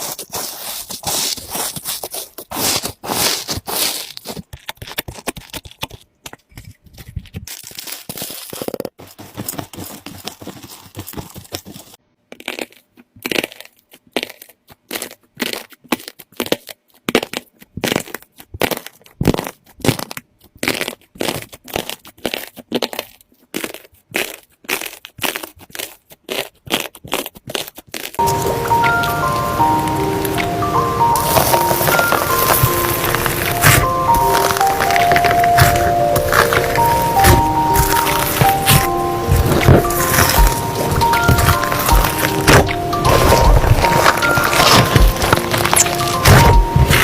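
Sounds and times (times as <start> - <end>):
slime squeezed by hand crackling: 12.3 - 47.0.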